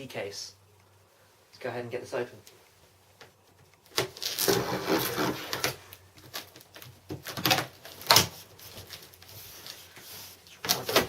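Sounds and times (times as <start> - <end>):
cardboard box rustling and scraping: 4.2 - 5.8.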